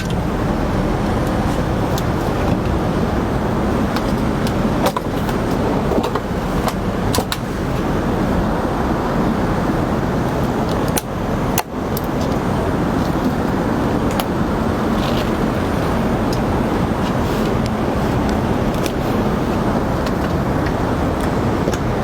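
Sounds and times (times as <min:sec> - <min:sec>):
airplane cabin rumble: 0:00.0 - 0:22.0.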